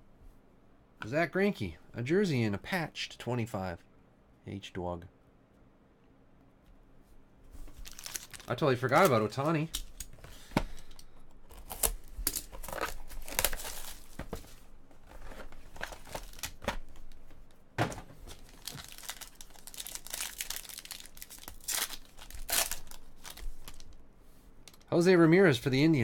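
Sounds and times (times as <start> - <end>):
card wrappers tearing and crinkling: 7.8 - 10.1, 10.8 - 14.4, 15.0 - 17.2, 18.2 - 24.0.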